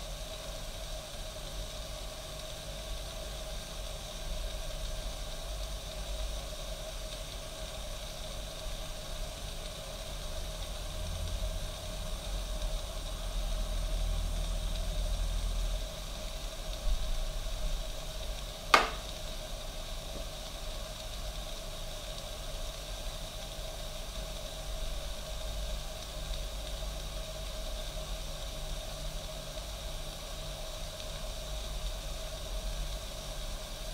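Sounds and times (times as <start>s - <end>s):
coffee machine steam hissing: 0.0s - 33.9s
sharp click: 18.7s - 19.1s.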